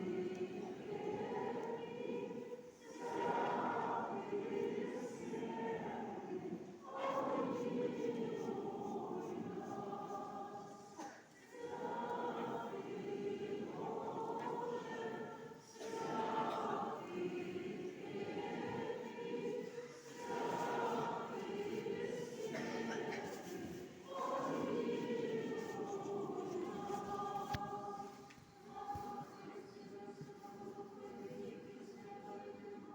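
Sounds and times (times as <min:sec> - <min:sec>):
choir chanting: 0:00.0 - 0:32.9.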